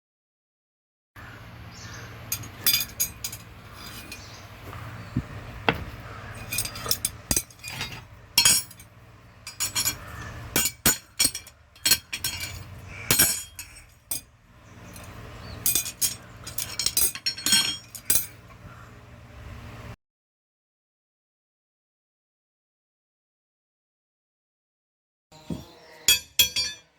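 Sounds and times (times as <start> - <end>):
hammer striking iron on anvil: 5.7 - 8.9, 9.5 - 14.2, 25.5 - 26.8.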